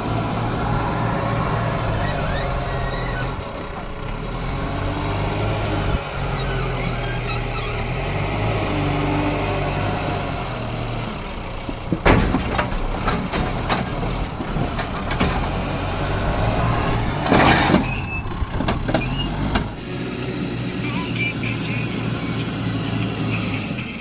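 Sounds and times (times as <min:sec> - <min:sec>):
diesel engine under load: 0:00.0 - 0:24.0
clattering: 0:11.9 - 0:15.8.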